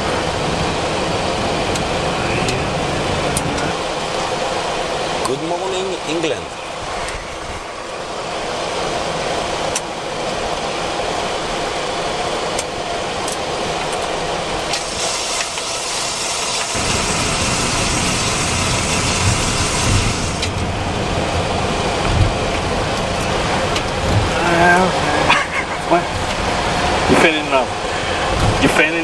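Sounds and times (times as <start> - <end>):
aircraft engine and airflow noise: 0.0 - 29.0
hiss: 14.6 - 20.6
low rumble: 16.8 - 28.6.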